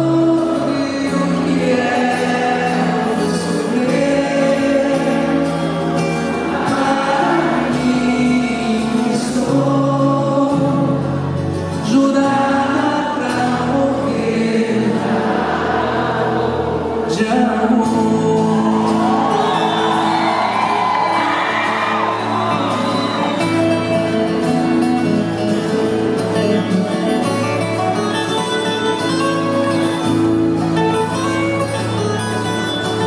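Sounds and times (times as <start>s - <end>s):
live band with singing: 0.0s - 33.0s
audience cheering: 18.5s - 24.0s.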